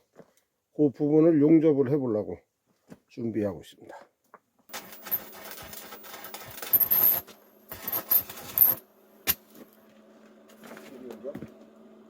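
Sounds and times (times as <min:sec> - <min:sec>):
metal clinking and scraping: 0:04.7 - 0:09.6.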